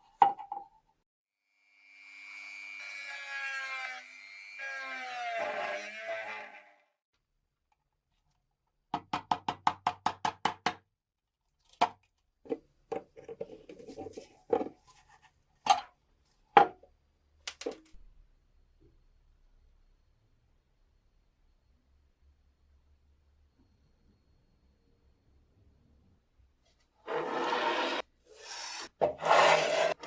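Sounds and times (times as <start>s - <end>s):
brief scrape: 27.1s - 30.0s.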